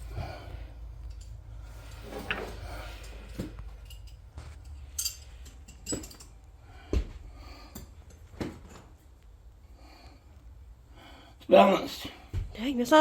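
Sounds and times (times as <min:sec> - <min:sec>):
metal blade clinking and knocking: 0:03.8 - 0:06.4.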